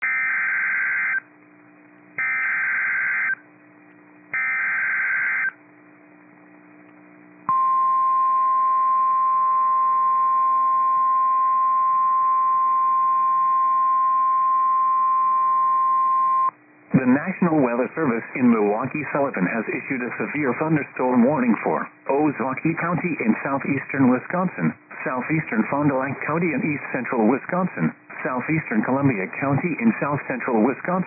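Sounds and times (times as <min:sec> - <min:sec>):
steady alarm tone: 0:00.0 - 0:01.2, 0:02.2 - 0:03.4, 0:04.3 - 0:05.6.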